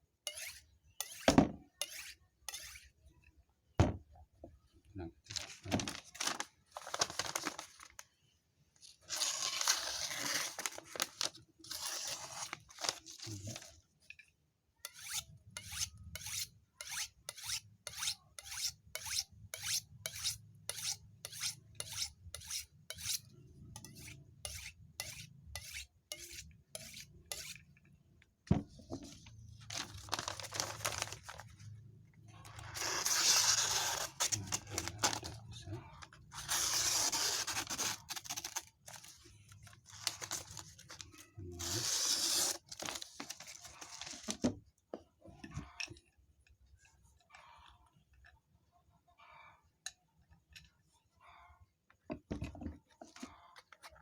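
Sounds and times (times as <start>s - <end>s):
knife scraping on sharpening steel: 0.2s - 3.0s, 14.8s - 27.6s, 32.7s - 34.6s, 41.6s - 42.6s.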